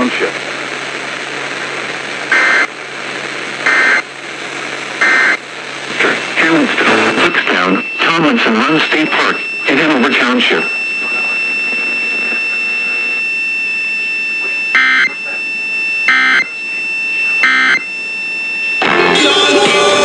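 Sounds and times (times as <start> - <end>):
steady high-pitched whine: 0.0 - 20.0
digital data tone bursts: 6.4 - 20.0
music: 18.8 - 20.0.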